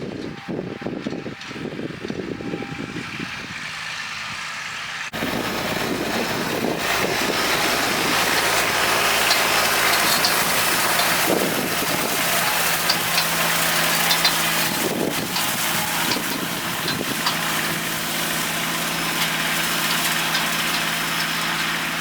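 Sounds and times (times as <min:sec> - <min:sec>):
wind on microphone: 0:00.0 - 0:03.8, 0:05.2 - 0:08.8, 0:14.6 - 0:17.3
tractor diesel engine running: 0:00.0 - 0:22.0
hay tedder: 0:00.4 - 0:22.0.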